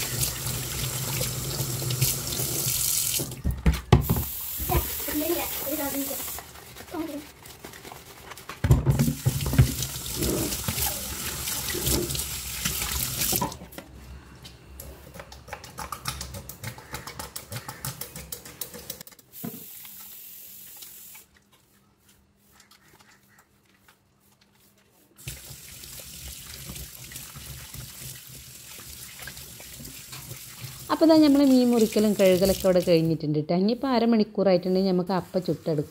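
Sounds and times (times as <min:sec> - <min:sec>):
tap water running into sink: 0:00.0 - 0:06.4, 0:08.7 - 0:13.6, 0:25.2 - 0:32.9.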